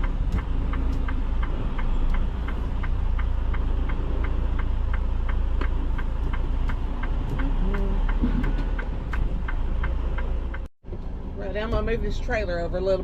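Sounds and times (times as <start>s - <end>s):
even ticking: 0.0s - 10.7s.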